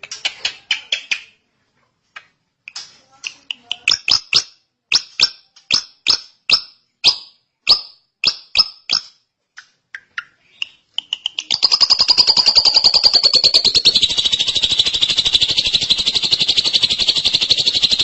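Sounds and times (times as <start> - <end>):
bird rattling trill: 3.7 - 9.1, 11.0 - 18.0
bird whistled calls: 10.2 - 18.0.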